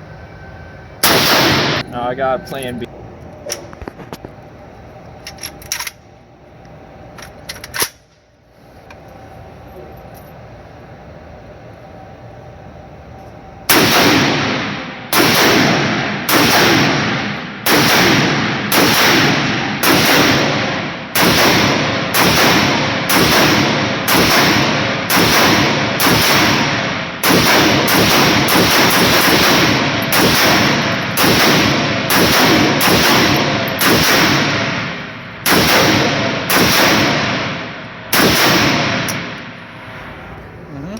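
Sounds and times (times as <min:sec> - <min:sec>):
rifle shots with ringing echo: 0:01.0 - 0:01.8, 0:13.7 - 0:39.6.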